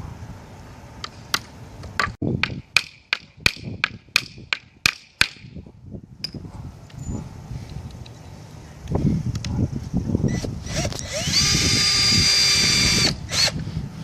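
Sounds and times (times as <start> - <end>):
hammer striking nail into wood: 2.0 - 5.5.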